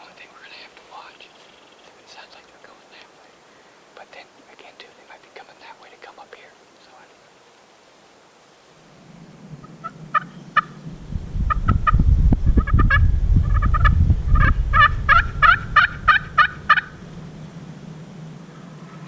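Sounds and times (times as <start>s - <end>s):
low rumble: 9.0s - 19.0s
turkey yelps: 13.6s - 16.9s.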